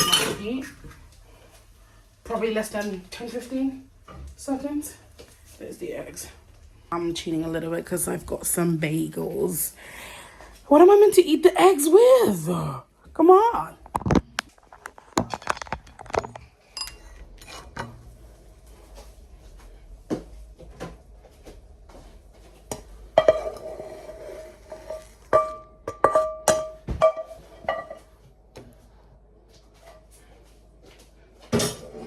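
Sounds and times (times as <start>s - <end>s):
dishes and utensils clinking: 0.0s - 0.7s, 15.3s - 18.0s, 22.7s - 23.9s, 24.8s - 28.1s.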